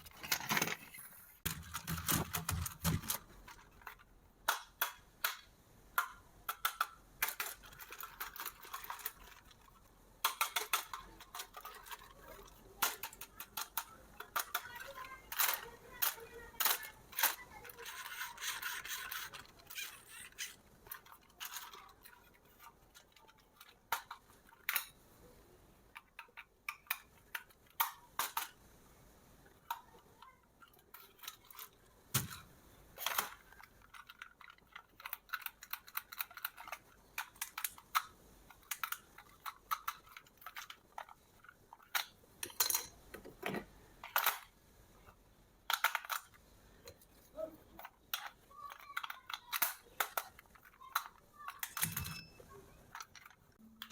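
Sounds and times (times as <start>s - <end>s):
toy clicks and taps: 1.5s - 25.0s, 25.9s - 28.6s, 33.0s - 42.9s, 47.8s - 53.9s.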